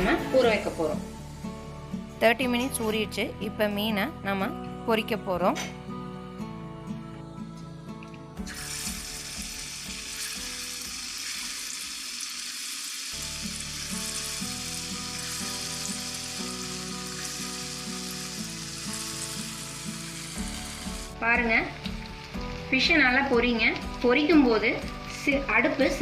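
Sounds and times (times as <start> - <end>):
fish sizzling in hot oil: 8.4 - 26.0.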